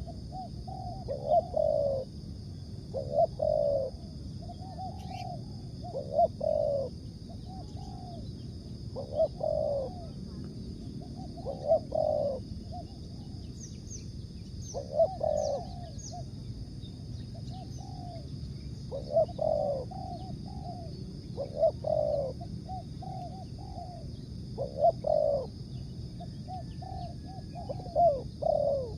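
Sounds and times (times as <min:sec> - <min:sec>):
dove cooing: 0:00.0 - 0:02.2, 0:02.9 - 0:13.7, 0:14.6 - 0:16.4, 0:17.3 - 0:28.9
faint high bird chirps: 0:03.0 - 0:28.9.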